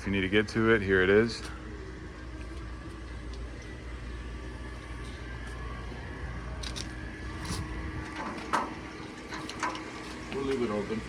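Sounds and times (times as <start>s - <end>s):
steady low hum: 0.0s - 11.0s
metal access door clicks and knocks: 8.2s - 9.9s.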